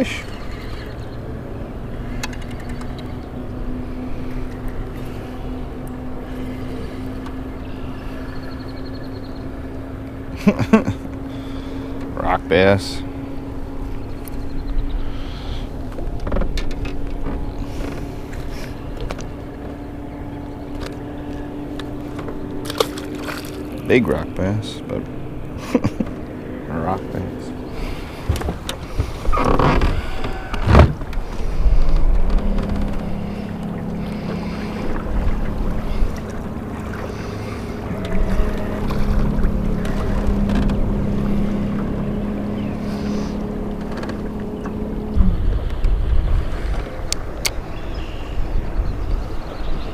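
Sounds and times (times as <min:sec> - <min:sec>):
motor humming: 0:00.0 - 0:49.9
wind buffeting microphone: 0:27.4 - 0:49.9.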